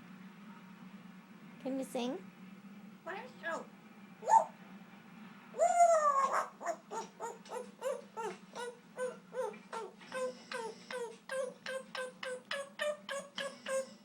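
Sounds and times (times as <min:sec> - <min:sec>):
parrot singing: 0:04.2 - 0:04.6, 0:05.6 - 0:14.0.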